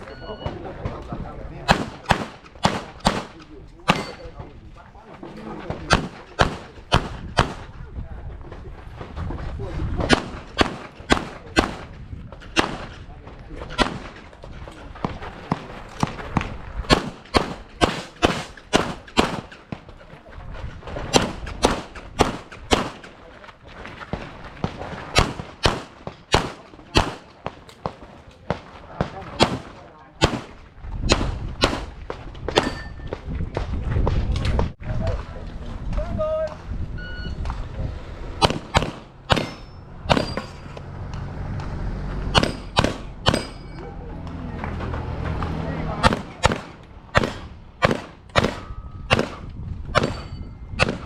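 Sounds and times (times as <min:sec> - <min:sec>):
handgun shots: 0:01.7 - 0:04.3, 0:16.9 - 0:19.8, 0:21.1 - 0:23.2, 0:25.2 - 0:27.3, 0:38.4 - 0:40.5, 0:42.4 - 0:43.7, 0:46.0 - 0:51.0.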